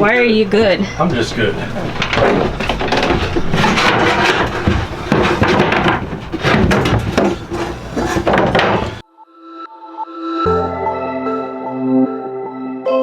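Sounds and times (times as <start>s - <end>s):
wood knocking and scraping: 1.0s - 9.0s.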